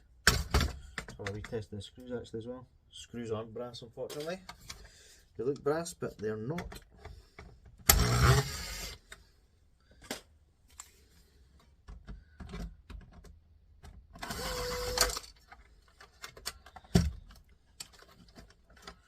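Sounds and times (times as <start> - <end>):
cordless screwdriver motor whining: 7.9 - 9.0, 14.2 - 15.2.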